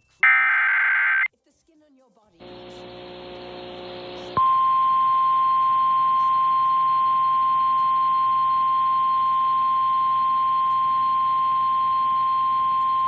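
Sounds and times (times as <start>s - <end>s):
steady high alarm tone: 0.2s - 1.3s.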